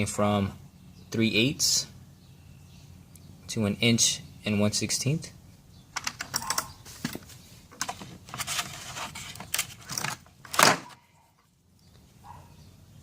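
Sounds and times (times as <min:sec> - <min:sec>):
metal sockets clicking and clinking: 0:06.0 - 0:07.2.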